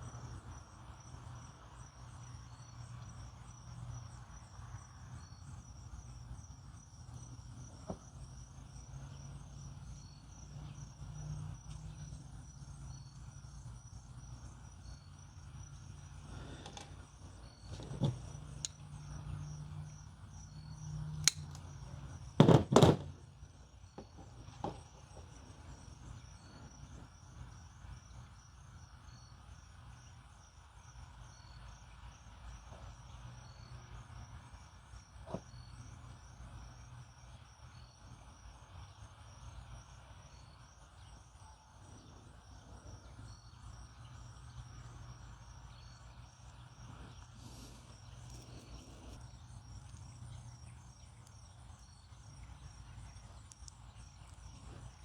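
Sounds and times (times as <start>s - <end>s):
faint background hum: 0.0s - 55.0s
light click: 21.2s - 21.6s.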